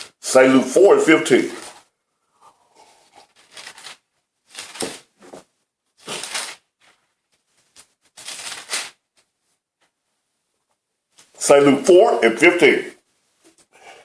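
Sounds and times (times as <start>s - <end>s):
paper pages rustling: 1.3s - 2.0s, 3.0s - 10.0s.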